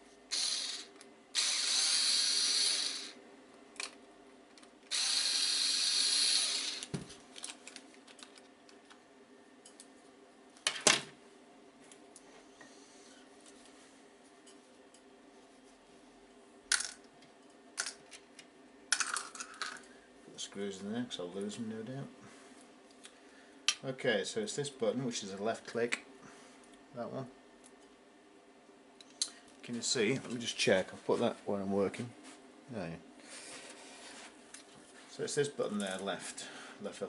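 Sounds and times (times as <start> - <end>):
electric screwdriver whirring: 0.3 - 3.2, 4.9 - 6.9.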